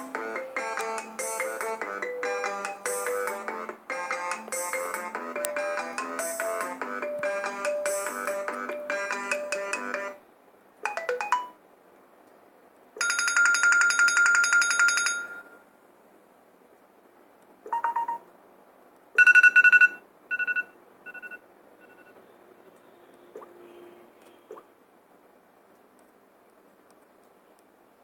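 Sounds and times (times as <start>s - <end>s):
melodic phone ringtone: 0.0s - 10.2s, 10.8s - 11.6s, 13.0s - 15.6s, 17.7s - 18.2s, 19.2s - 22.2s.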